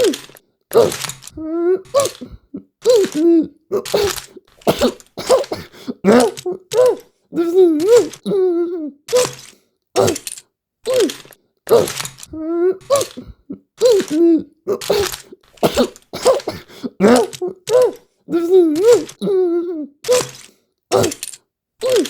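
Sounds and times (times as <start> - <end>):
breathy gasps: 0.0 - 10.2, 10.9 - 21.2
man crying out in pain: 0.8 - 4.2, 5.3 - 9.3, 11.7 - 15.2, 16.2 - 20.3.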